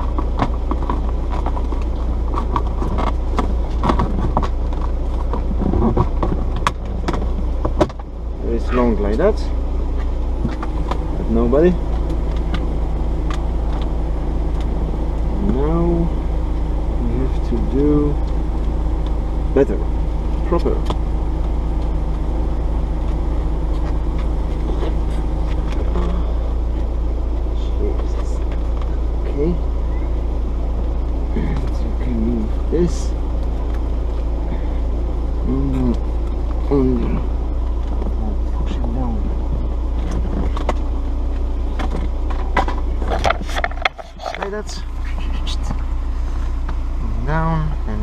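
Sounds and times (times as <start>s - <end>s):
low mechanical hum: 0.0s - 48.0s
steady low rumble: 0.0s - 48.0s
clicks and rustles of parts: 40.0s - 44.7s.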